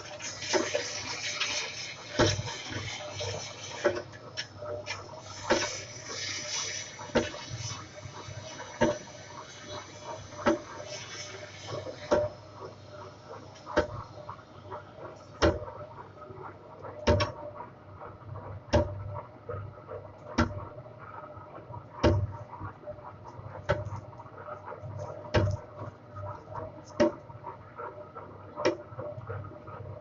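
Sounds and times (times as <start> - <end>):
lathe running hum: 0.0 - 16.7.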